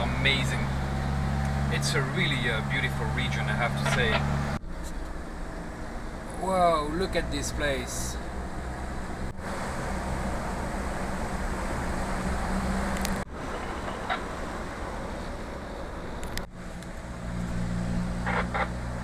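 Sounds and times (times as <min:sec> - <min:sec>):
diesel engine running: 0:00.0 - 0:19.0
road and wind noise: 0:00.0 - 0:19.0.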